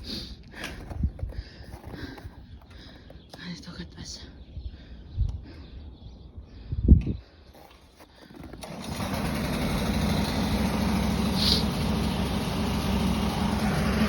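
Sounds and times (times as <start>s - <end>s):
vehicle engine running: 8.5s - 14.0s.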